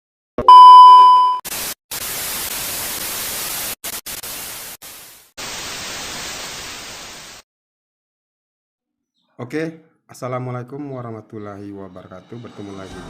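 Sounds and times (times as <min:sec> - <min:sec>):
loud electronic beep: 0:00.4 - 0:01.4
static hiss: 0:01.5 - 0:07.4.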